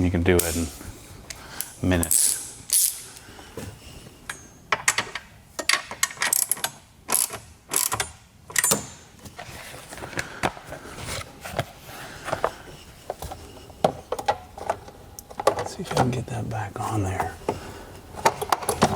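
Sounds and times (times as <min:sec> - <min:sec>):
tools and car parts clicking: 0:01.6 - 0:03.2, 0:04.2 - 0:09.1.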